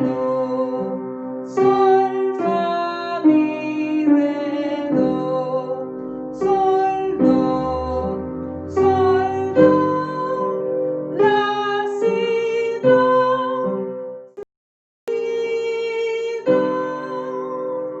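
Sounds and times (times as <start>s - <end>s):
instrumental accompaniment: 7.1s - 11.1s.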